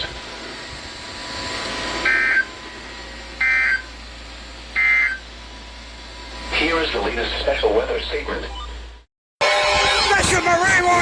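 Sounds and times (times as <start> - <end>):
radio hiss: 6.5 - 8.5.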